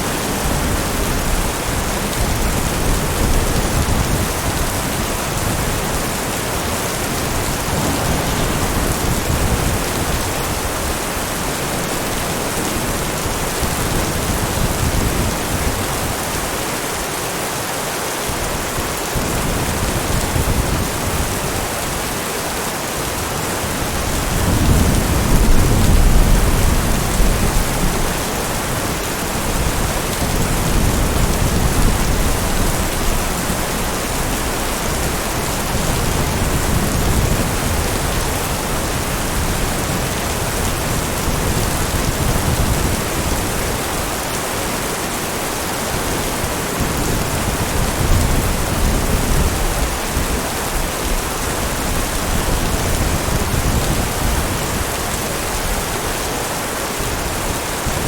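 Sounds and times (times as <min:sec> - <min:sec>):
thunder rumbling: 0:00.0 - 0:16.3, 0:23.6 - 0:44.3
heavy rain falling: 0:00.0 - 0:58.0.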